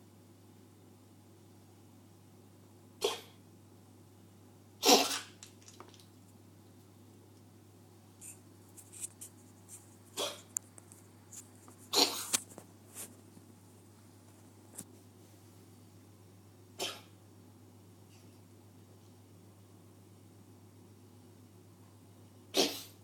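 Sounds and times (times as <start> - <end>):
cat coughing: 3.0 - 3.4, 4.8 - 5.4, 10.2 - 10.5, 11.9 - 12.3, 16.8 - 17.2, 22.5 - 23.0.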